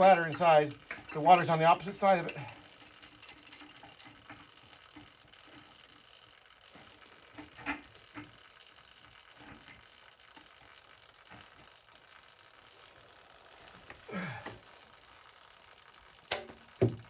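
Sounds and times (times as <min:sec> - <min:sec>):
clicks and knocks of parts handled: 0:02.3 - 0:05.1.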